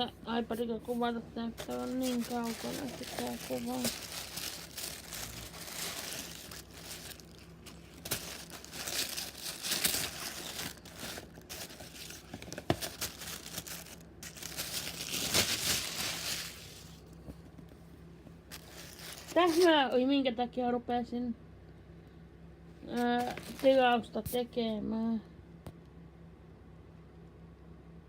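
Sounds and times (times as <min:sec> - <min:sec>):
packaging crinkling and rustling: 0:01.5 - 0:17.2, 0:18.5 - 0:19.9, 0:22.9 - 0:24.0.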